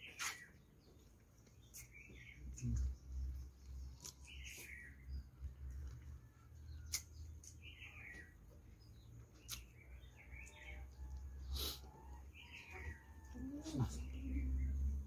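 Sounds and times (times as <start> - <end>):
faint high chirping calls: 0.0 - 5.3, 6.2 - 15.0.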